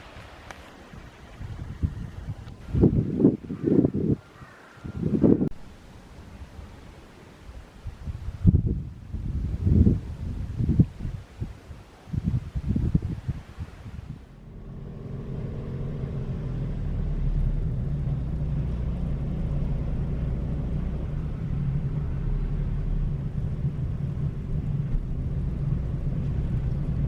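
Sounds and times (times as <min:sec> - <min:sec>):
car engine and tyre rumble: 0:05.4 - 0:27.0.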